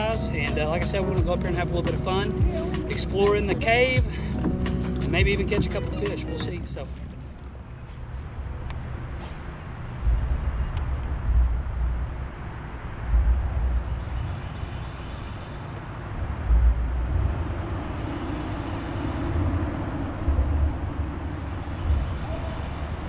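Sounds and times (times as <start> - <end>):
wind buffeting microphone: 0.0 - 14.2
steady rushing background: 0.0 - 14.5, 15.7 - 23.0.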